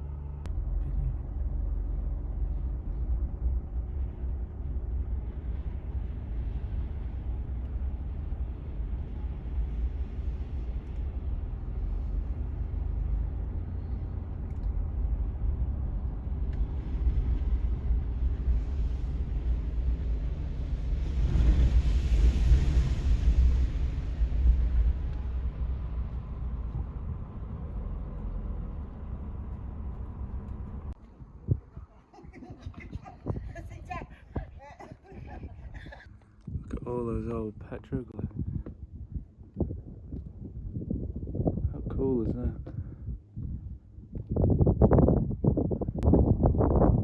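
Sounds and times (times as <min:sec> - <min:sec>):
truck engine rumbling: 0:00.0 - 0:38.2
rushing noise: 0:01.0 - 0:31.0.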